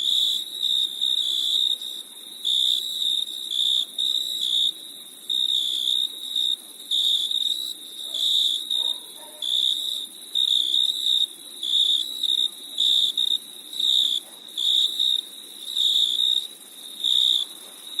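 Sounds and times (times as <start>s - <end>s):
crickets chirping: 0.0s - 18.0s
high continuous insect hum: 0.0s - 18.0s.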